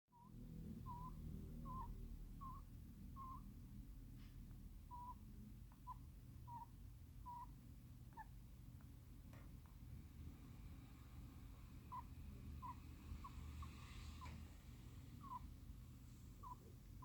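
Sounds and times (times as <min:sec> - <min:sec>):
hamster snoring squeaks: 0:00.2 - 0:03.5, 0:04.9 - 0:05.2, 0:05.8 - 0:07.5, 0:10.8 - 0:15.6, 0:16.4 - 0:17.0.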